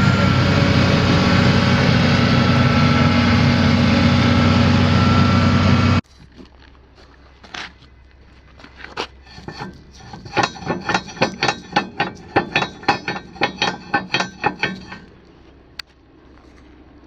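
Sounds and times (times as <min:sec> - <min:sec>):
ringing metallic knocks: 0:09.3 - 0:15.1.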